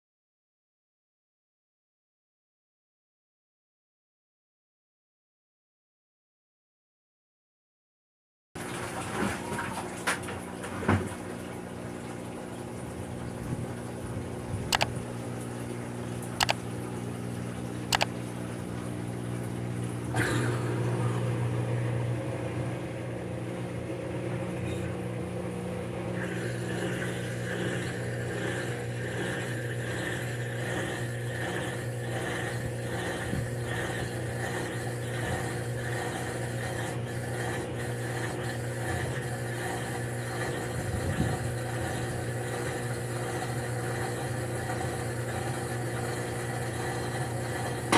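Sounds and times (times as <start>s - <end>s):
washer drain pump humming: 9.0s - 20.1s
sharp clicks: 14.8s - 15.0s, 16.1s - 16.9s, 17.8s - 18.2s.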